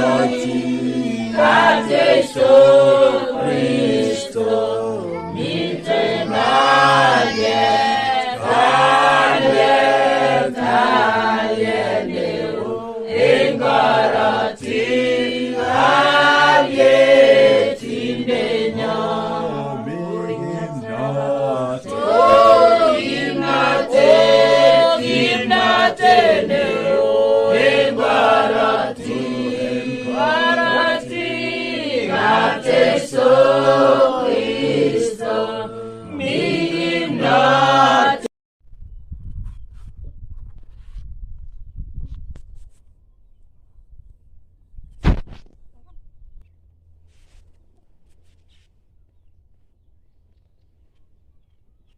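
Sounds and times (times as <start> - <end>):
choir singing: 0.0 - 38.3.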